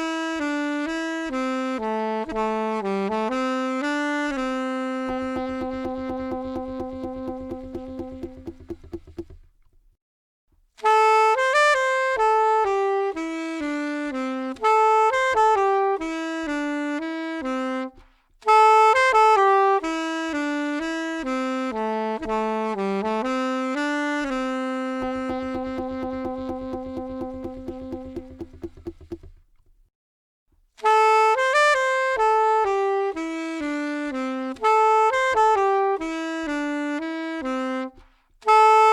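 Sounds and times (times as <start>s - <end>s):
saxophone melody: 0.0s - 9.5s, 10.8s - 29.8s, 30.8s - 38.9s.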